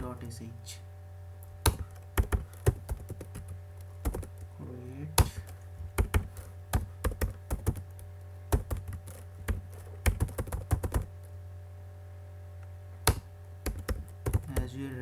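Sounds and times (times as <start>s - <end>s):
steady low hum: 0.0s - 15.0s
computer keyboard typing: 1.6s - 4.5s, 5.2s - 11.2s, 13.1s - 14.8s.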